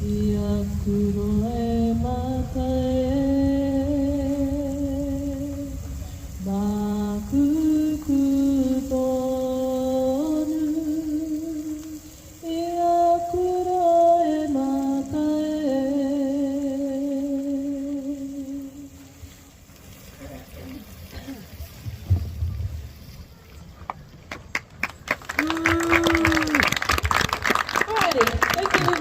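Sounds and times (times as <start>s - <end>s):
person singing slowly with vibrato: 0.0s - 19.4s.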